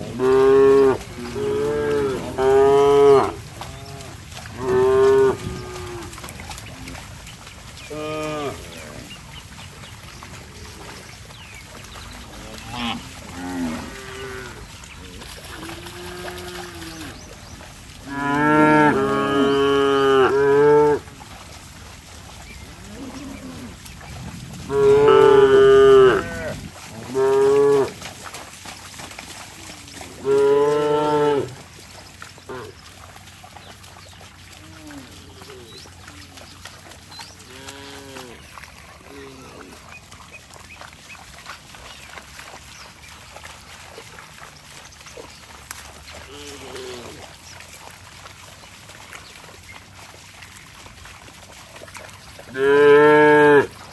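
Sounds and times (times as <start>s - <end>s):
cattle mooing: 0.0s - 7.0s, 7.8s - 9.1s, 12.3s - 17.2s, 18.0s - 21.1s, 22.8s - 28.0s, 29.9s - 31.6s, 37.5s - 39.8s, 52.5s - 53.8s.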